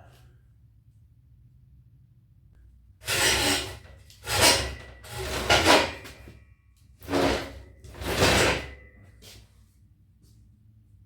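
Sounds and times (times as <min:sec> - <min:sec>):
steel dragged across work surface: 0:03.0 - 0:06.2, 0:07.0 - 0:08.9.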